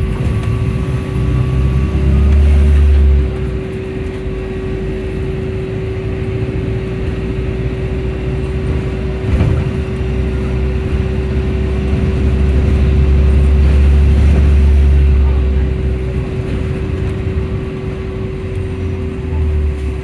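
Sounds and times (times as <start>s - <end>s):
bus engine whine: 0.0s - 20.0s
bus low rumble: 0.0s - 20.0s.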